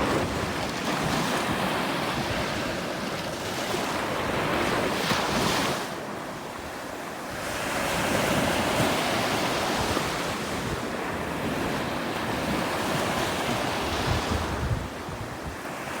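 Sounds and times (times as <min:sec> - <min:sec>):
wind buffeting microphone: 0:00.0 - 0:04.9, 0:07.4 - 0:15.7
ocean waves breaking: 0:00.0 - 0:06.3.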